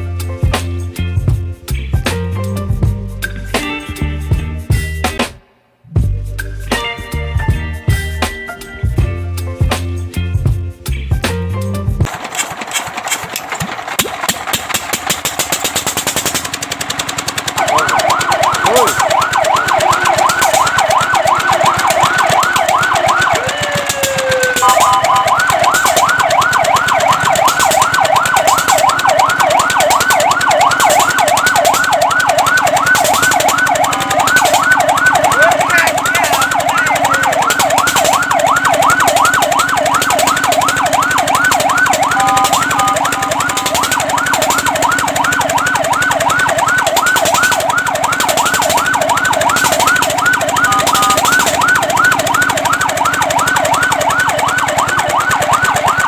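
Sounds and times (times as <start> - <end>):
fire truck siren yelping: 12.0 - 56.0
rapid steady rattle: 12.0 - 56.0.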